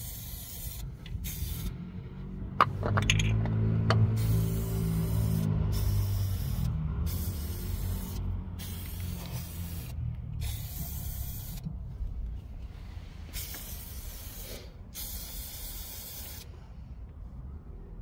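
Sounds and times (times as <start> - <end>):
aerosol spray can hissing: 0.0 - 1.7, 4.1 - 11.6, 13.3 - 16.5
steady low rumble: 0.0 - 18.0.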